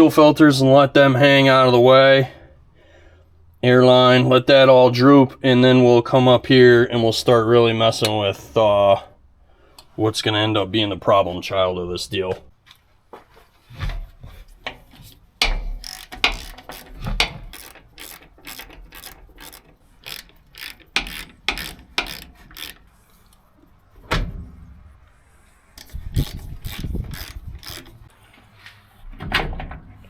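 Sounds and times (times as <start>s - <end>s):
ratchet wrench clicking: 15.4s - 23.4s, 25.8s - 28.1s.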